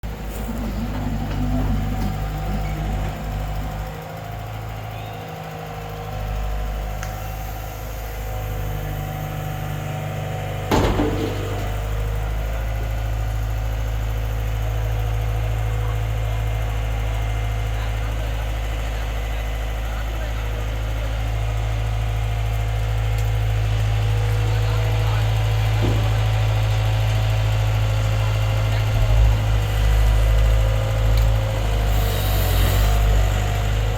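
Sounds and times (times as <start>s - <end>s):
heavy machine engine idling: 0.0s - 33.9s
loud metal bang: 10.7s - 12.2s.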